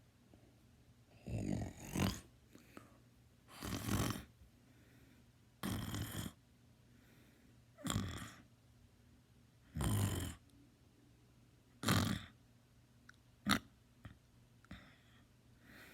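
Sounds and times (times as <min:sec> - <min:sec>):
person snoring loudly: 0:01.2 - 0:02.3, 0:03.5 - 0:04.3, 0:05.6 - 0:06.4, 0:07.8 - 0:08.4, 0:09.8 - 0:10.4, 0:11.8 - 0:12.3.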